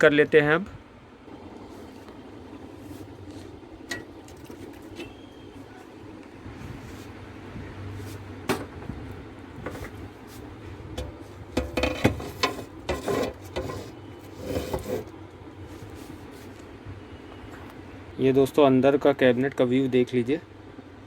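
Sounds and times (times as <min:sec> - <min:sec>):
computer case parts clacking: 0:11.0 - 0:14.0.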